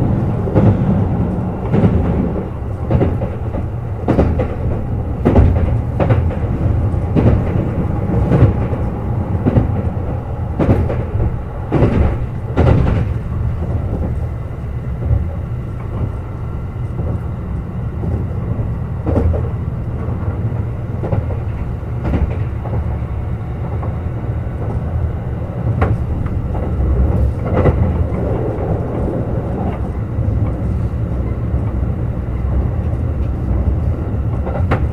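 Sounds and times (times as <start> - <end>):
clacks over rail joints: 0.0 - 34.9
train wheels rumbling on rail: 0.0 - 34.9.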